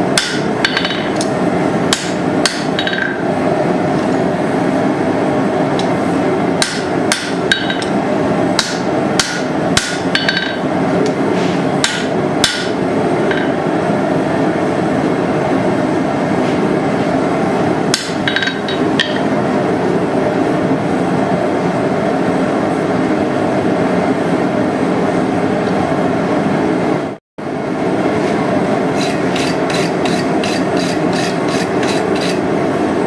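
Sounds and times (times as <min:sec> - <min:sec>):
hammer striking steel on anvil: 0:00.2 - 0:01.3, 0:01.9 - 0:03.2, 0:06.6 - 0:08.0, 0:08.6 - 0:10.7, 0:11.8 - 0:13.6, 0:17.9 - 0:19.4, 0:29.0 - 0:32.4.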